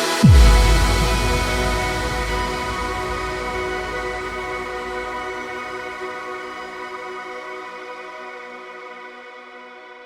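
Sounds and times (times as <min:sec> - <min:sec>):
sustained music chord: 0:00.2 - 0:06.5.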